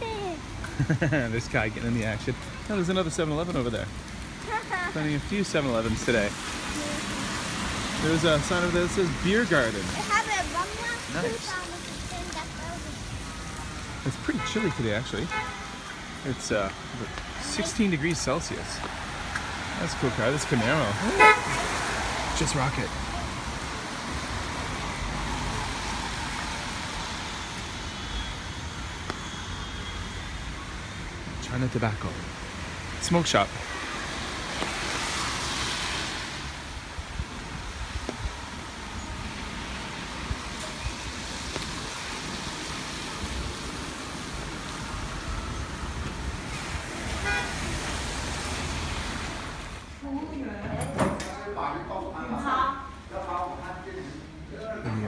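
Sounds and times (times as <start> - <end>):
passing vehicles hiss and rumble: 0.0 - 50.6
city street traffic: 0.0 - 55.0
vehicle horn toot: 14.4 - 15.8, 21.1 - 21.7, 47.2 - 47.6.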